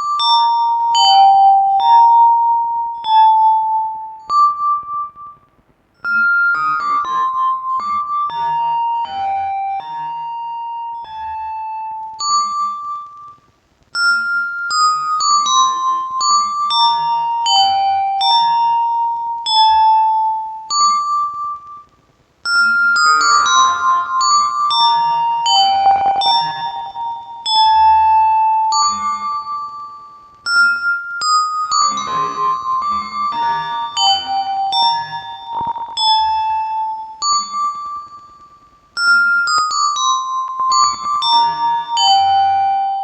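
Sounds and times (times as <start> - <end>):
keyboard melody with delay: 0.0 - 43.0.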